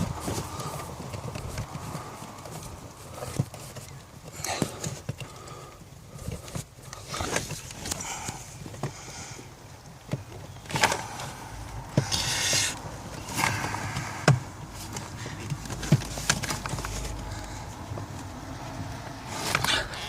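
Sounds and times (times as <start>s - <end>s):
plastic parts clicking and knocking: 0.0s - 20.0s
scraping rustle: 0.0s - 20.0s.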